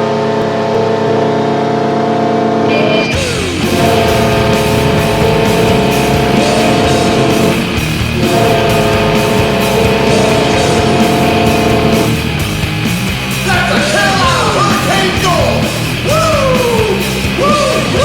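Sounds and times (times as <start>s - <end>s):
air horn blaring: 0.0s - 12.4s
rock song with pounding drums: 2.7s - 18.0s.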